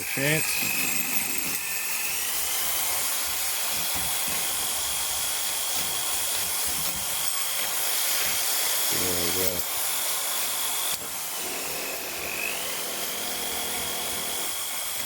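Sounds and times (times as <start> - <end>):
power tool whine: 0.0 - 15.0.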